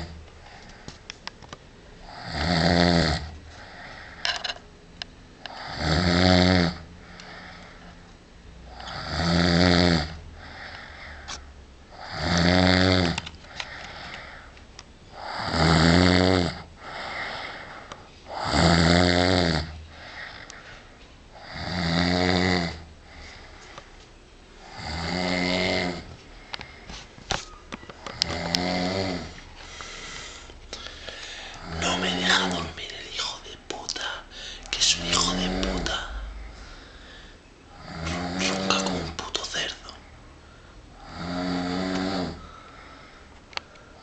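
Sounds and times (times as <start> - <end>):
man snoring loudly: 2.0 - 3.3, 5.5 - 6.8, 8.7 - 10.2, 11.9 - 13.2, 15.2 - 17.1, 18.3 - 19.8, 21.4 - 22.9, 24.6 - 26.1, 28.3 - 29.4, 34.9 - 36.3, 37.8 - 39.1, 41.0 - 42.4
soft breathing: 13.4 - 15.3, 29.4 - 41.0.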